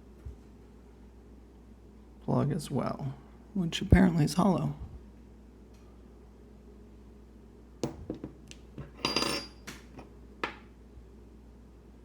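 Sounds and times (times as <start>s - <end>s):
metal piece ringing: 9.0s - 9.6s.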